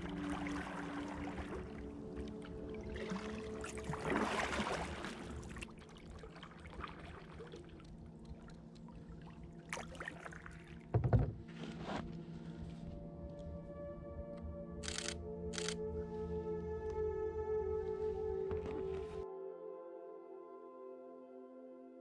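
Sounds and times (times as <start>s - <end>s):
paddle strokes splashing water: 0.0s - 12.1s
soft background music: 0.0s - 22.0s.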